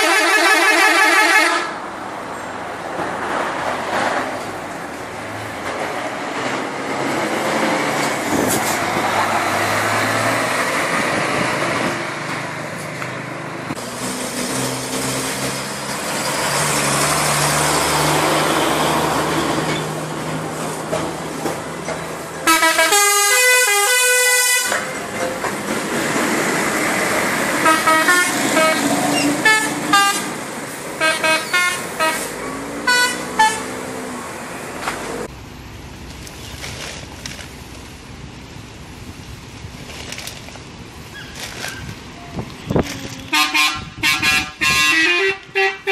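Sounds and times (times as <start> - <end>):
musical bus air horn: 0.0 - 1.8, 22.4 - 25.0, 27.6 - 30.4, 31.0 - 33.8, 42.7 - 45.9
traffic engine noise: 0.0 - 45.9.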